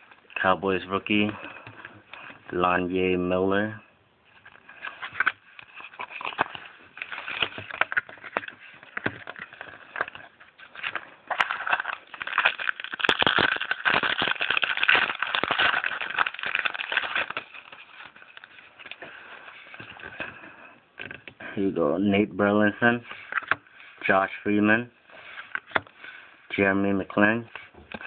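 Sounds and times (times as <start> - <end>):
cards rustling: 4.3 - 21.4, 22.9 - 28.0
foil wrapper tearing and crinkling: 4.7 - 20.3.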